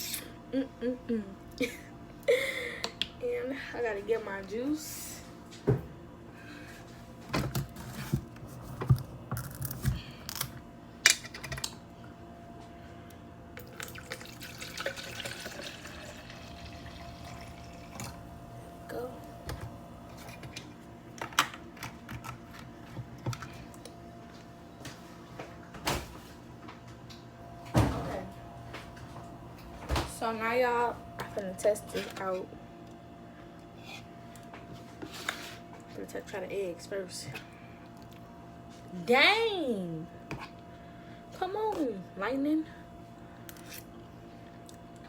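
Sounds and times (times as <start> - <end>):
liquid pouring: 13.6 - 18.6.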